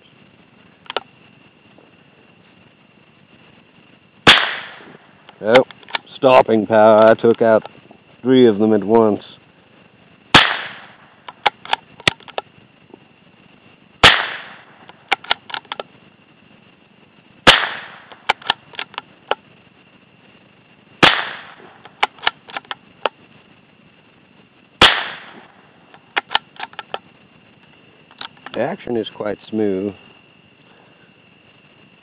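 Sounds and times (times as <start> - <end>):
rifle shots: 4.2 - 5.1, 10.3 - 12.2, 14.0 - 15.4, 17.4 - 18.6, 21.0 - 22.6, 24.8 - 25.6.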